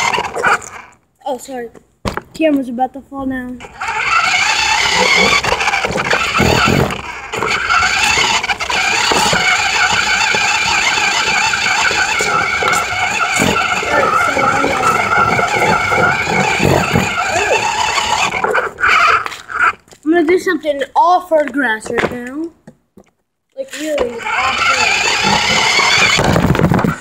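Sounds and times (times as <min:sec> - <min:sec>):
toy car electric motor whining: 0:00.0 - 0:01.0, 0:03.6 - 0:19.9, 0:23.6 - 0:27.0
wheels and plastic body rattling: 0:00.0 - 0:02.7, 0:03.4 - 0:27.0.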